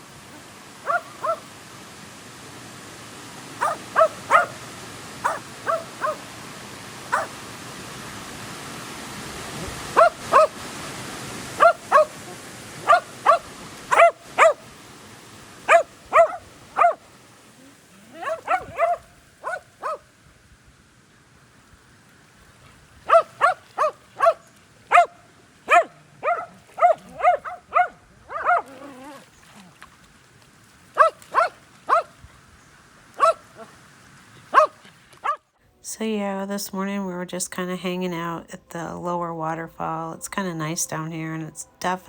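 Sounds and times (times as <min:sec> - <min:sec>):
steady hiss: 0:00.0 - 0:28.3, 0:30.0 - 0:35.2
dog barking: 0:00.8 - 0:01.4, 0:03.6 - 0:04.6, 0:05.2 - 0:06.2, 0:07.1 - 0:07.3, 0:10.0 - 0:10.6, 0:11.6 - 0:12.2, 0:12.8 - 0:14.6, 0:15.7 - 0:17.0, 0:18.1 - 0:20.0, 0:23.1 - 0:28.8, 0:31.0 - 0:32.1, 0:33.2 - 0:33.7, 0:34.5 - 0:35.4.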